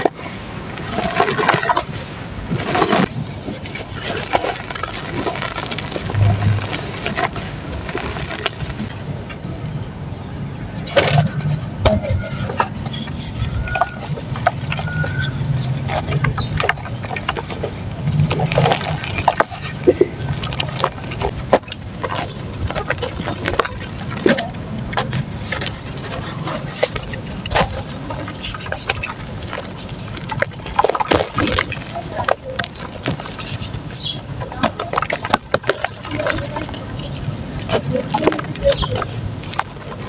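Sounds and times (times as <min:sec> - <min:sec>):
crackles and clicks: 0:00.0 - 0:09.8, 0:10.8 - 0:40.0
mud crumbling into water: 0:00.8 - 0:09.0, 0:10.9 - 0:40.0.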